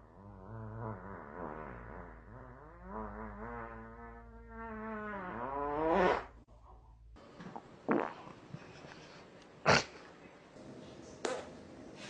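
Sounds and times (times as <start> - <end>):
buzzy fart sound effect: 0.0 - 6.4, 7.4 - 8.3.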